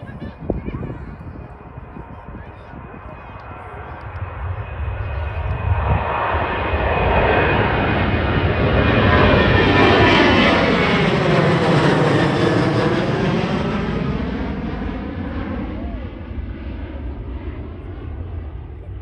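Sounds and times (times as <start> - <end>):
wind on microphone: 0.0 - 10.8
airliner engine roar passing: 0.0 - 19.0.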